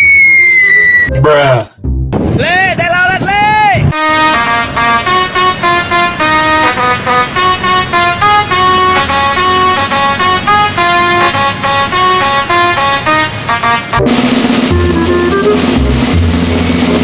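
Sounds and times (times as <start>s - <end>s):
multi-tone bus horn melody: 3.9s - 17.0s.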